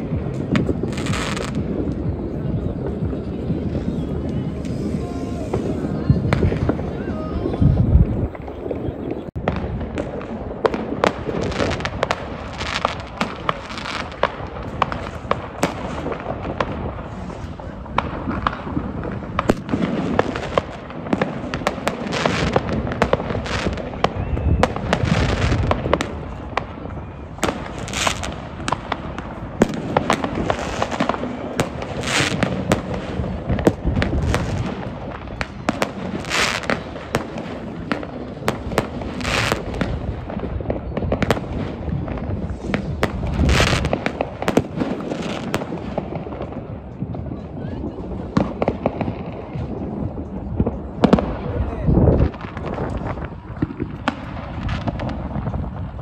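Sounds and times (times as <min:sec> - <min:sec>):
fireworks bangs and crackles: 0:00.0 - 0:56.0.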